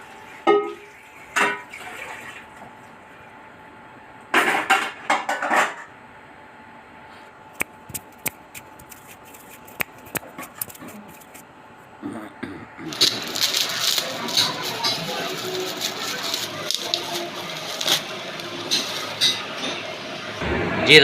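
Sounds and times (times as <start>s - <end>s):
scuffling and rustling: 12.9s - 19.2s.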